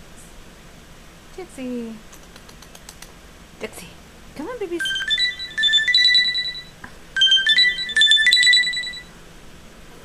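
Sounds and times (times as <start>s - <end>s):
phone ringtone melody: 4.8s - 9.1s.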